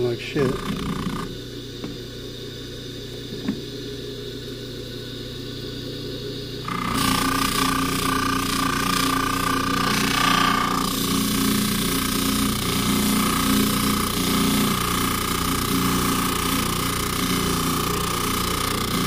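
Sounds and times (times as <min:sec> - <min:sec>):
buffing motor running: 0:06.6 - 0:19.0.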